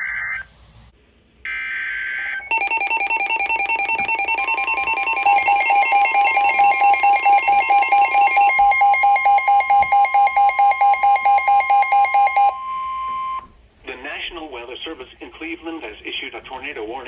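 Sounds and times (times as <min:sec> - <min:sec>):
steady high tone: 0:02.2 - 0:13.5
pulsing two-tone alarm beeping: 0:02.5 - 0:13.4.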